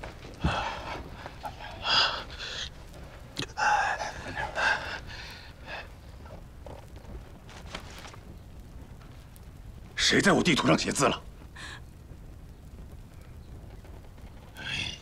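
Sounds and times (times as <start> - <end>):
paper map rustling: 4.0 - 9.4.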